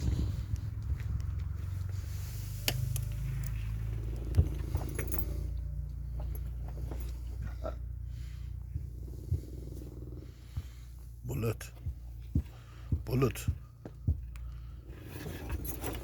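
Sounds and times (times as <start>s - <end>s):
dog snoring: 8.1s - 11.3s.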